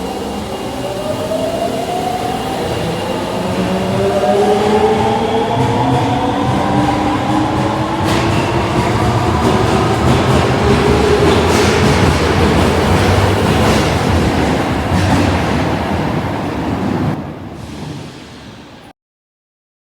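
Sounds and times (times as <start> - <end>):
train cars clattering over rails: 5.6 - 18.8.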